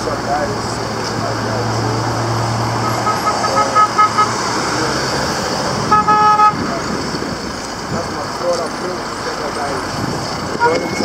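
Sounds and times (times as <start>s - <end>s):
engine hum: 0.0s - 11.0s
road traffic: 0.0s - 11.0s
horn blast: 2.8s - 4.5s, 5.8s - 6.8s.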